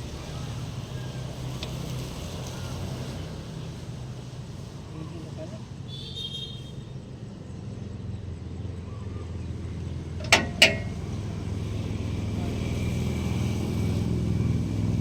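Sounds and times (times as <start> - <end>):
sharp metallic clicks: 10.2 - 11.2.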